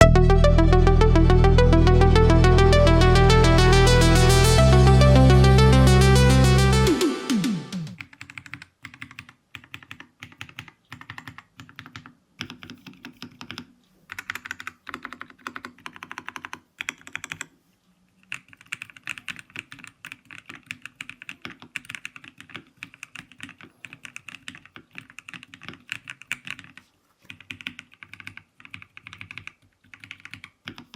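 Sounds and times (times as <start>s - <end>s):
mechanical keyboard typing: 8.0s - 17.5s, 18.3s - 30.9s.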